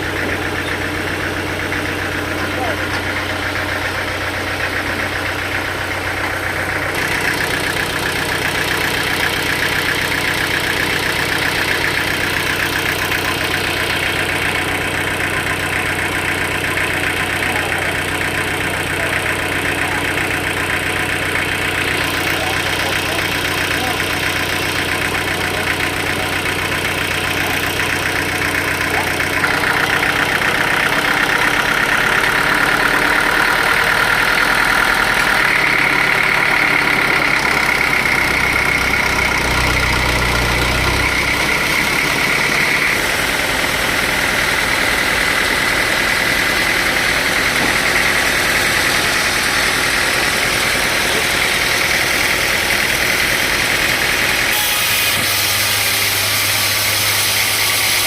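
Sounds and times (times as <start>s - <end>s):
saw blade whine: 0.0s - 58.0s
sawmill engine drone: 0.0s - 58.0s.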